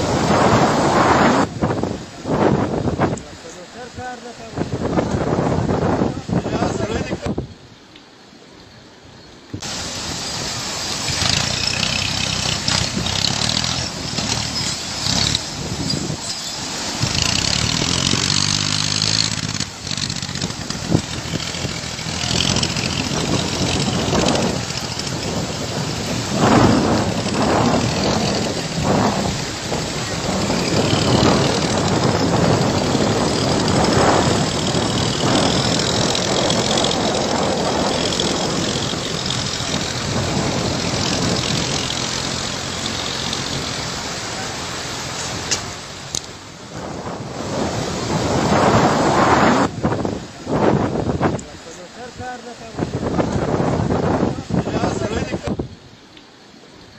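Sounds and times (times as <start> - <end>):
vehicle engine running: 9.6 - 49.4.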